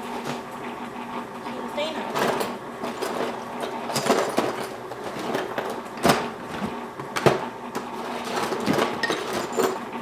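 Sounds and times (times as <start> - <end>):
items clattering in drawer: 2.1 - 9.9.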